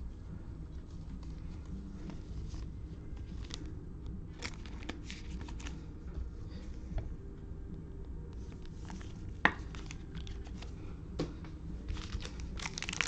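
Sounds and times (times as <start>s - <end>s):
steady low hum: 0.0s - 13.0s
cards being handled: 0.8s - 5.9s, 8.4s - 13.0s
plastic wrapper crinkling: 4.4s - 5.8s, 8.7s - 10.7s, 11.9s - 13.0s.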